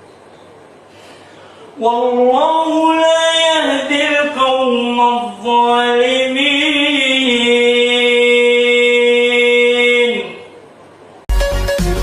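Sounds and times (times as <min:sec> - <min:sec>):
man chanting: 0:01.8 - 0:10.6.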